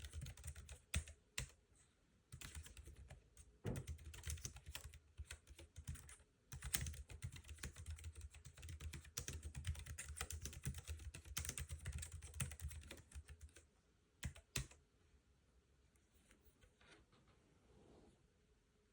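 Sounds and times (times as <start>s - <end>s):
typing on a keyboard: 0.0s - 1.6s, 2.3s - 13.6s, 14.2s - 14.8s.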